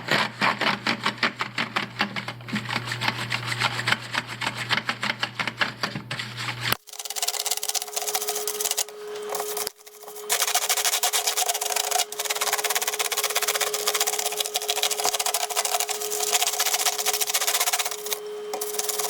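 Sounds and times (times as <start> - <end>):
brush scrubbing plastic keys: 6.8 - 19.0.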